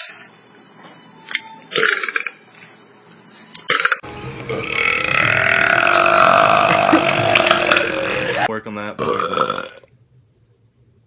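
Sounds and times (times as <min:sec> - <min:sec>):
man belching: 0:04.3 - 0:09.8.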